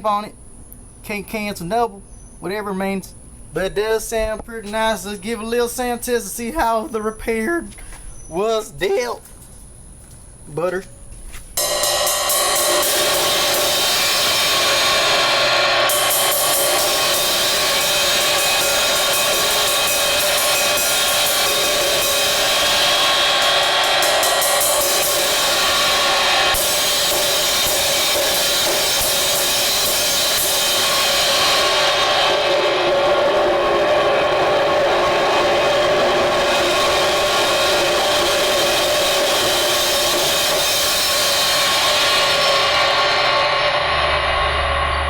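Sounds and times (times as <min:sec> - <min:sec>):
cymbal struck and ringing: 0:11.6 - 0:45.0.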